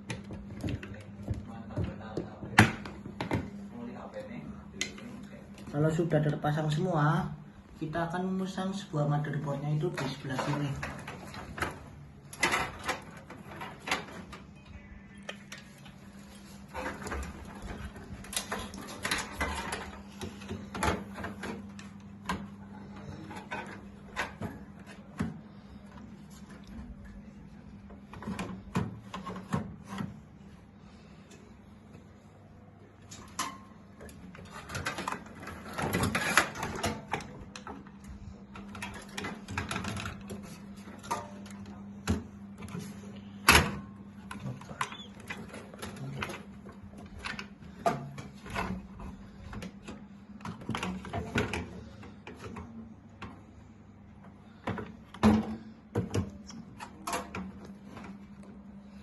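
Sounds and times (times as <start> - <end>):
hardware clicking and scraping: 33.0 - 43.4.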